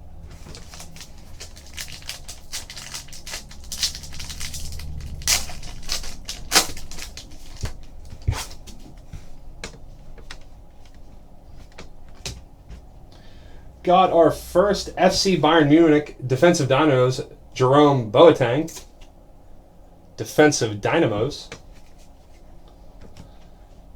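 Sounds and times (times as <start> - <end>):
trading cards snapping and rustling: 0.3 - 9.0.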